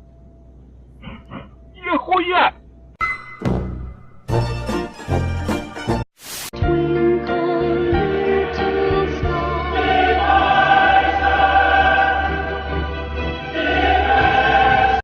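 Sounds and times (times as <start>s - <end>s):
background music: 3.0s - 15.0s
choir singing held notes: 8.0s - 15.0s.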